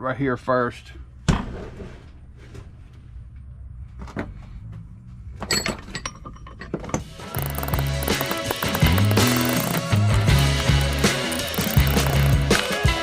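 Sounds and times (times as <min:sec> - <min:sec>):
metallic clinks and rattles: 0:05.5 - 0:12.5
metal parts knocking: 0:05.6 - 0:12.5
background music: 0:07.1 - 0:13.0.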